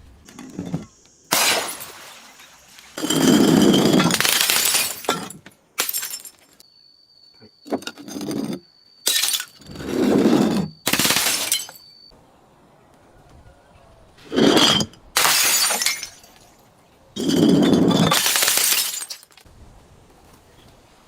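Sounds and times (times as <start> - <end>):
glass bottles shattering: 0.5 - 6.6, 7.7 - 12.0, 14.3 - 16.6, 17.2 - 19.4.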